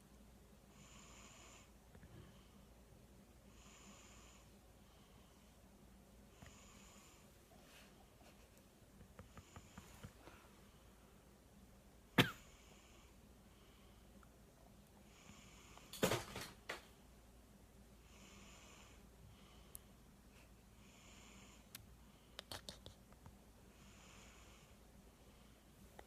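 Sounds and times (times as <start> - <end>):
man snoring softly: 0.7 - 2.4, 3.5 - 4.6, 6.3 - 7.4, 18.0 - 19.7, 23.7 - 24.8.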